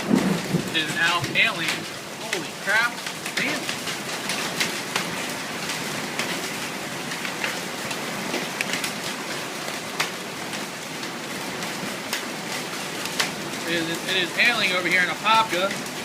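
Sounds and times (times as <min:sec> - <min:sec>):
hail pattering: 0:00.0 - 0:16.0.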